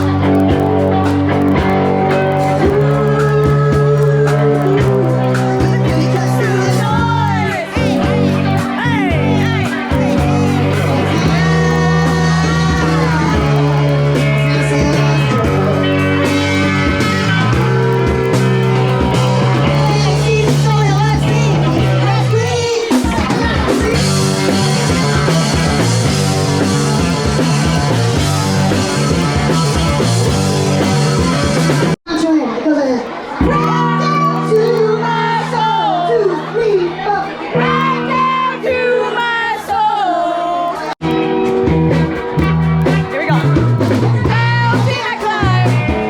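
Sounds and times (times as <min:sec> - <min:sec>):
person singing: 0:00.0 - 0:31.9, 0:42.4 - 0:46.0
sustained bass notes: 0:00.0 - 0:32.0, 0:41.0 - 0:46.0
rock guitar: 0:00.0 - 0:39.2, 0:40.7 - 0:46.0.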